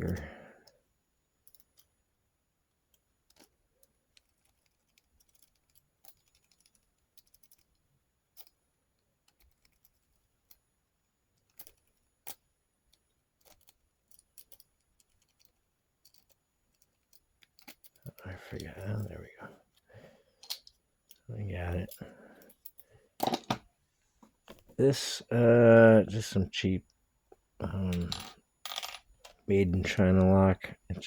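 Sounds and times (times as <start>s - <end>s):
lock pick clicking against pins: 2.9s - 8.6s, 9.2s - 10.7s, 11.3s - 19.1s.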